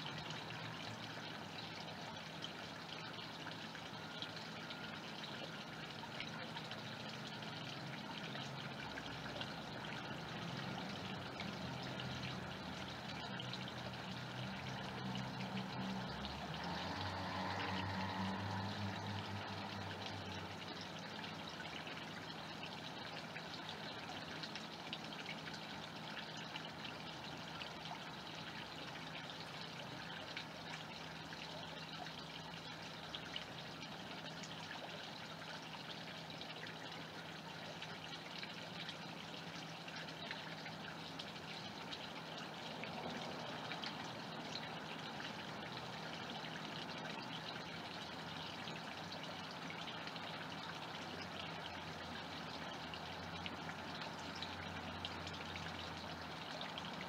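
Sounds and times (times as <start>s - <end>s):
pond water trickling: 0.0s - 57.0s.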